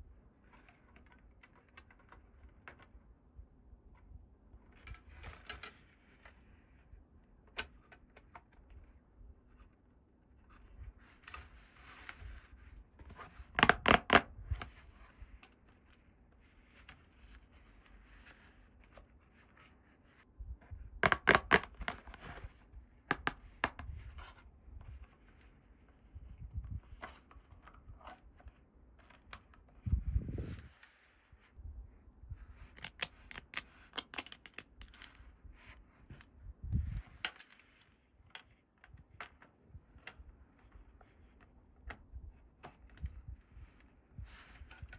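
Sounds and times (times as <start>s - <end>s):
packaging rustling: 32.7s - 35.2s
plastic toy pieces clicking: 32.8s - 35.2s.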